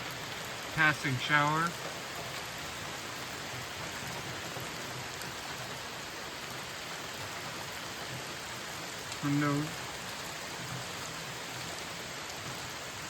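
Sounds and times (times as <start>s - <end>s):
rain pattering: 0.0s - 13.0s.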